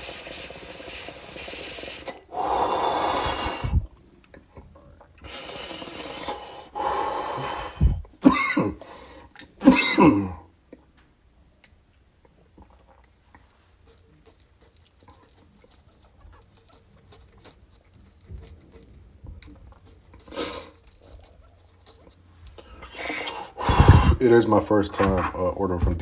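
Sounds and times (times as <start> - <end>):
person breathing heavily: 1.2 - 3.9, 5.2 - 9.3, 22.6 - 24.2
person coughing: 8.2 - 9.0, 9.6 - 10.4.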